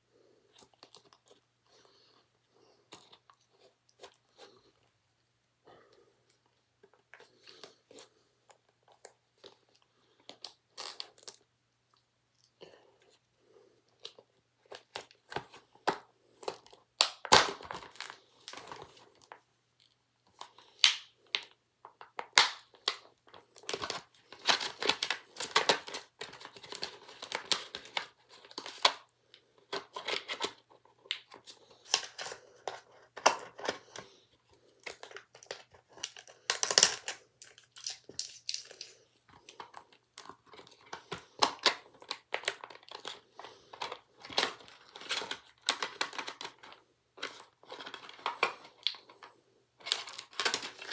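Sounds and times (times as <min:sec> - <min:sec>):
plastic packaging crackling: 0:23.6 - 0:29.1, 0:34.8 - 0:50.9.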